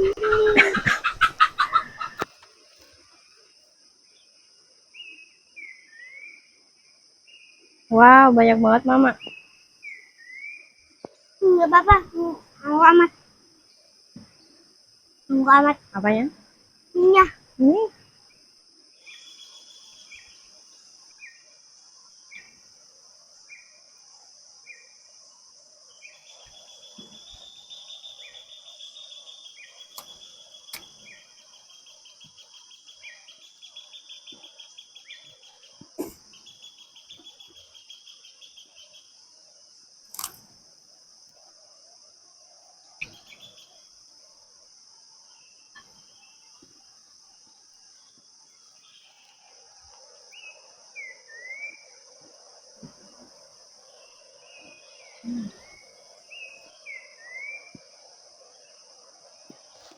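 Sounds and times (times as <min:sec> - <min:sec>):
fast bird trill: 0:00.0 - 0:02.2
bird falling call: 0:00.0 - 0:02.3
high insect drone: 0:00.0 - 0:59.9
sharp clicks: 0:40.1 - 0:40.4.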